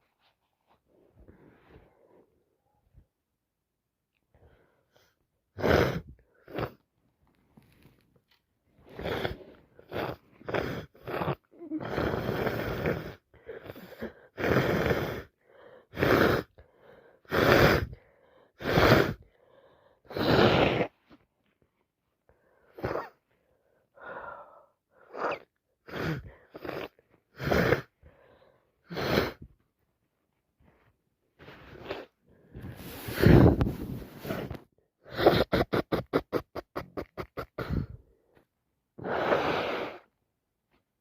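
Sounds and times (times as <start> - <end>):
gasping breaths: 8.8 - 20.9, 22.3 - 29.5, 31.4 - 36.1, 36.8 - 40.1.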